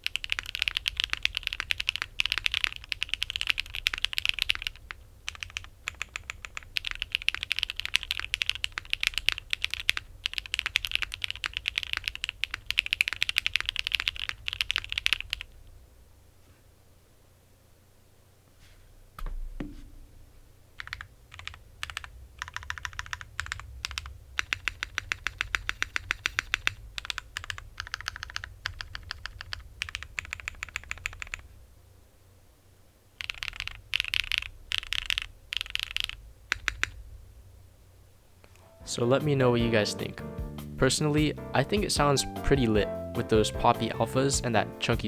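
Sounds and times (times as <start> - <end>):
mechanical keyboard typing: 0.0 - 15.5, 20.8 - 31.4, 33.2 - 37.0.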